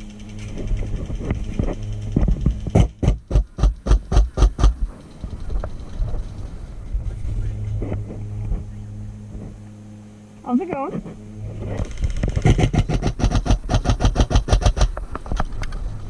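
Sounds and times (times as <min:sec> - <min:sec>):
steady low hum: 0:00.0 - 0:16.0
airsoft gun shots: 0:02.8 - 0:04.8, 0:12.4 - 0:14.9.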